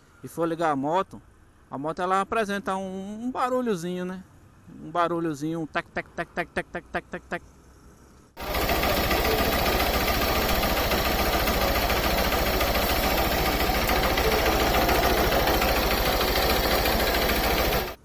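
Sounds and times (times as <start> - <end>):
motorcycle engine ticking clatter: 8.4 - 18.0.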